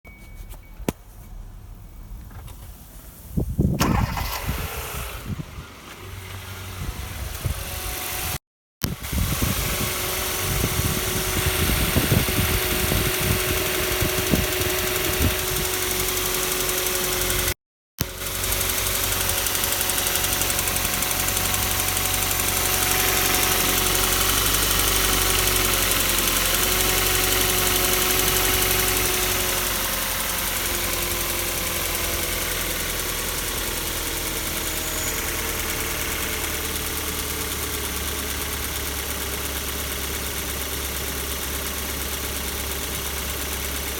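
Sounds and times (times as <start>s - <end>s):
car engine running: 8.8s - 43.9s
engine knocking: 10.4s - 43.9s.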